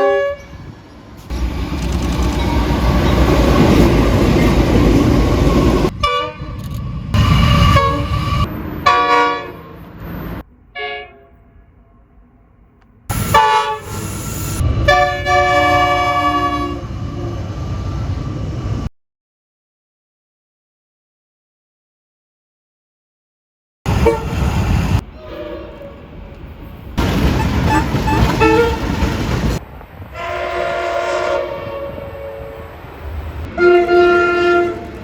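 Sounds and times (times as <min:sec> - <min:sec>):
multi-tone train horn blasts: 0:00.0 - 0:00.7, 0:01.3 - 0:09.9, 0:10.7 - 0:11.9, 0:13.1 - 0:17.4, 0:23.9 - 0:26.2, 0:27.5 - 0:29.1, 0:30.1 - 0:35.0
passing train: 0:00.0 - 0:18.9, 0:23.9 - 0:35.0.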